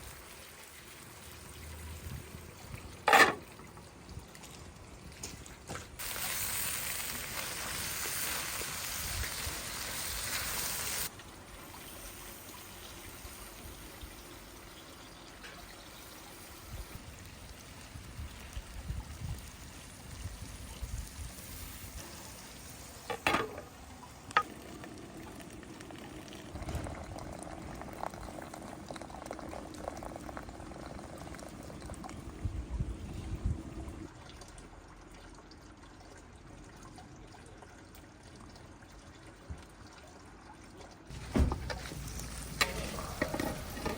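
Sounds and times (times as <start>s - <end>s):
meat sizzling in a pan: 6.0s - 11.1s.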